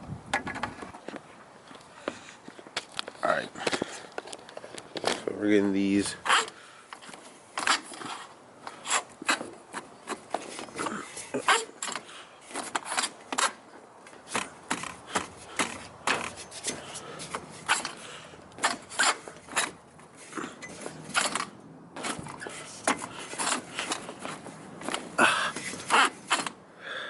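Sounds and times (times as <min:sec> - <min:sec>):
sharp clicks and knocks: 0:00.3 - 0:01.2
roof rack scraping and rubbing: 0:14.2 - 0:26.6.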